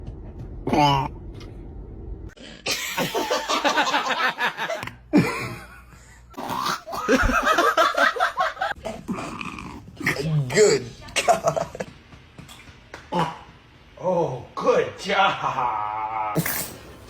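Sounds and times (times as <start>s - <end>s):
laughter: 2.7s - 5.8s, 6.9s - 8.8s, 11.2s - 11.9s.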